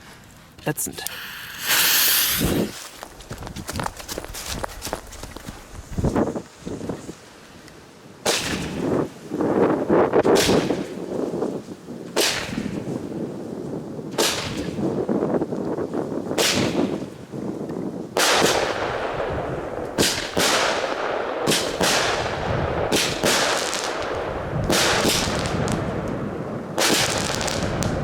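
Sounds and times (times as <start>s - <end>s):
firework shots with hiss: 0.7s - 3.0s, 20.0s - 22.3s, 22.9s - 25.9s, 26.8s - 28.0s.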